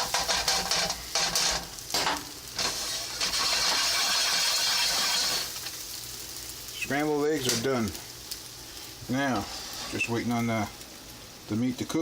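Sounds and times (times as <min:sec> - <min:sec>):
spatula scraping frying pan: 0:00.0 - 0:05.6, 0:09.1 - 0:10.3
eggs sizzling: 0:00.0 - 0:12.0.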